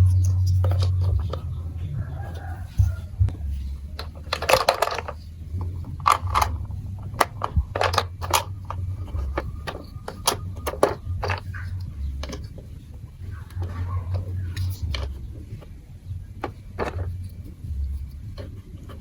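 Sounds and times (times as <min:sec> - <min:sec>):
plastic pieces clicking and clattering: 0:00.0 - 0:01.4, 0:04.0 - 0:12.6, 0:16.4 - 0:17.3
low hum: 0:00.0 - 0:19.0.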